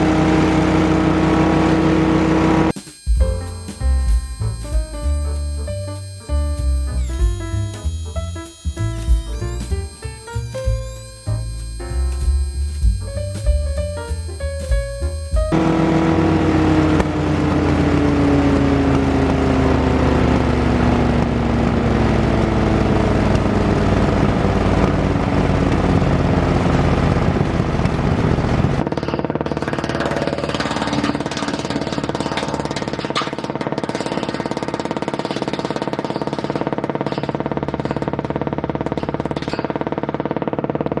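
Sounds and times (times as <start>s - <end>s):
wood chipper engine running: 0.0s - 2.7s.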